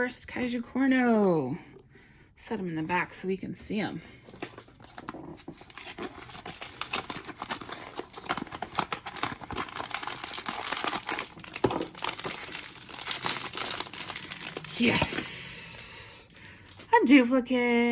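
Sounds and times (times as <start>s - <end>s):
wrapper crinkling and tearing: 4.2s - 16.4s.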